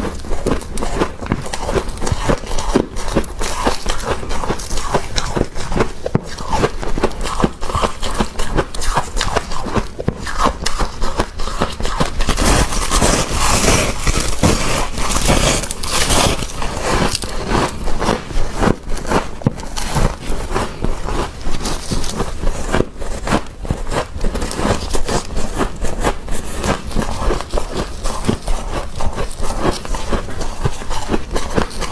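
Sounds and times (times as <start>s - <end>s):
freezer frost being scraped: 0.0s - 31.9s.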